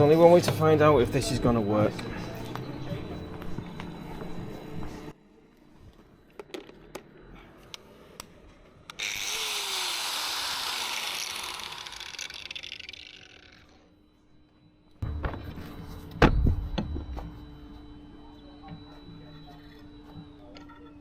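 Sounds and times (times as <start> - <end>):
angle grinder running: 8.9 - 13.9.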